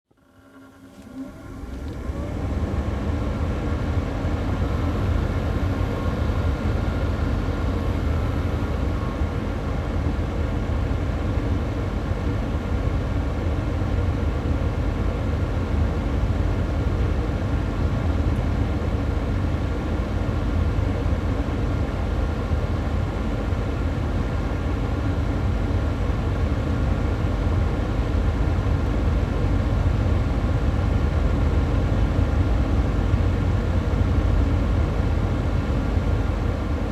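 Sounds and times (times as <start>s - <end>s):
faint steady whine: 0.1s - 36.9s
air purifier fan running: 0.2s - 36.9s.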